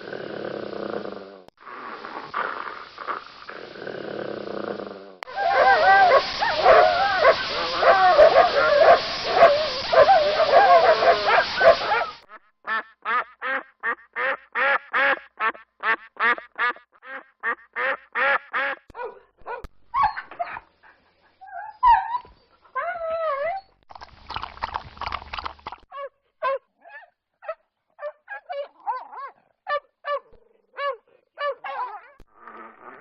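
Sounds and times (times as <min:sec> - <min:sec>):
dog snarls and whines: 0:00.0 - 0:12.3, 0:25.9 - 0:33.0
duck quacking: 0:12.3 - 0:18.8.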